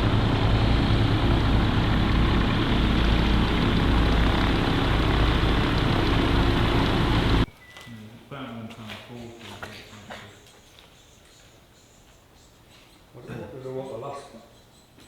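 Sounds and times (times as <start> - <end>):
engine running steadily: 0.0 - 7.5.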